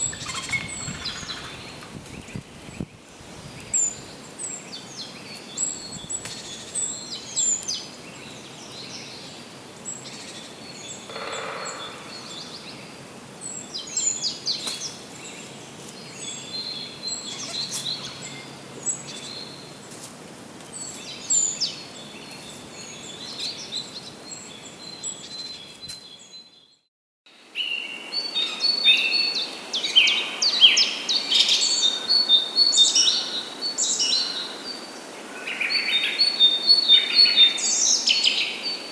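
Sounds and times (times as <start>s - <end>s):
songbirds chirping: 0.0s - 26.8s
steady background hiss: 27.3s - 38.9s.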